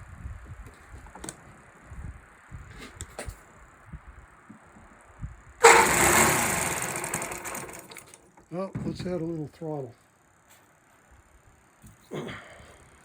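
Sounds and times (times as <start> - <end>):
model airplane engine running: 5.6 - 8.2.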